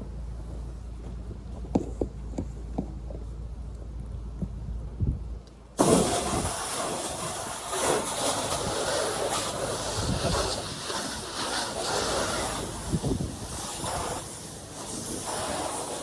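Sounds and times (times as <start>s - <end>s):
pressure washer spraying: 5.8s - 16.0s.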